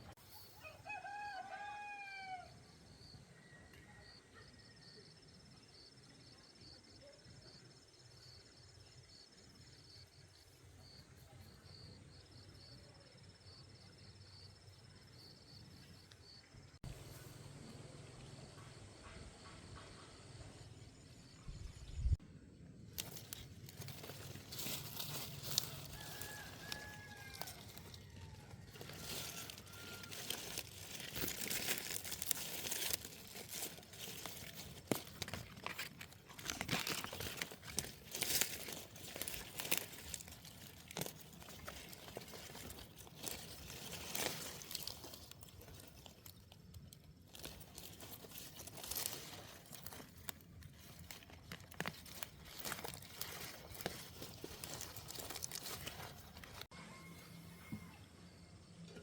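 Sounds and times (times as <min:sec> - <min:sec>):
material crinkling and crunching: 0:22.8 - 0:56.8.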